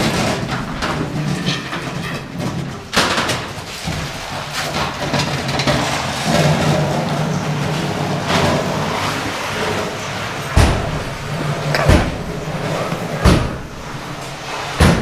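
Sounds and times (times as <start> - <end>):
scrap metal bangs: 9.9 - 15.0
steady low hum: 10.5 - 15.0.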